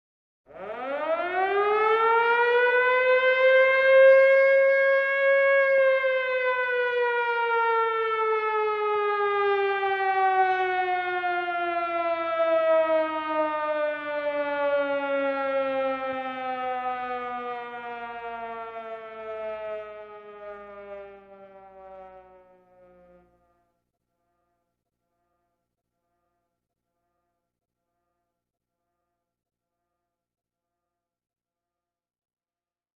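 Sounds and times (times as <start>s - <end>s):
siren wailing: 0.5s - 23.4s.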